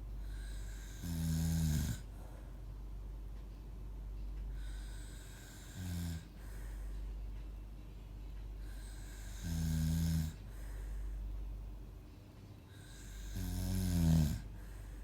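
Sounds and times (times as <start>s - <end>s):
person snoring: 0.2s - 2.1s, 4.6s - 6.3s, 8.6s - 11.0s, 12.8s - 14.5s.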